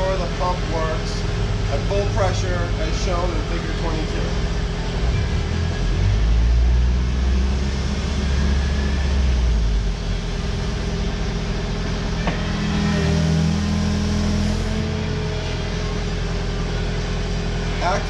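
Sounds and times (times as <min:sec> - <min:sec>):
excavator diesel engine under load: 0:00.0 - 0:18.0.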